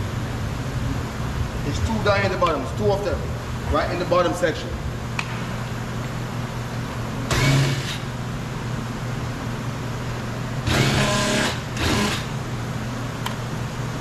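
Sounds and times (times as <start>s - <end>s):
steady low hum: 0.0s - 14.0s
cordless drill whirring: 7.3s - 8.1s, 10.6s - 12.3s.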